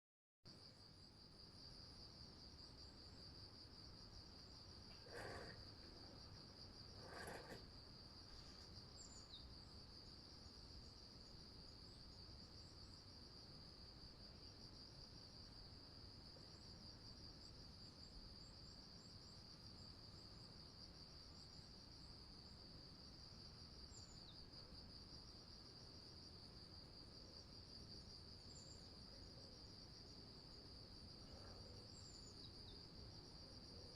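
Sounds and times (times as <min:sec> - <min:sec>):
crickets trilling: 0:02.6 - 0:11.8.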